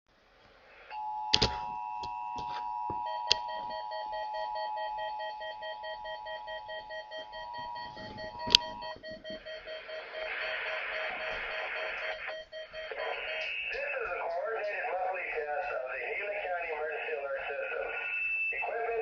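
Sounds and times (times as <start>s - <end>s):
two-tone alarm tone: 0.9s - 14.2s
rapid pulsing beep: 3.0s - 14.2s.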